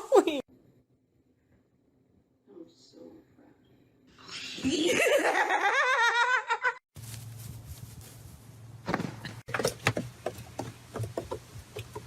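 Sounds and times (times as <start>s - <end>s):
knocks and rattles on hard surface: 9.5s - 12.0s.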